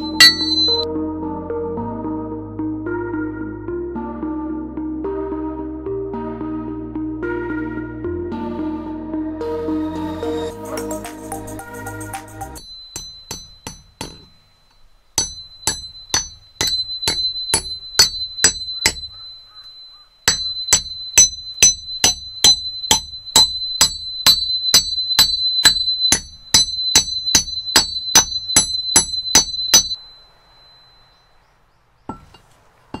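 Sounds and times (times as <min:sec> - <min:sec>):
hatchet striking with metallic clang: 0:00.0 - 0:00.8, 0:12.6 - 0:19.3, 0:20.2 - 0:30.1, 0:32.1 - 0:33.0.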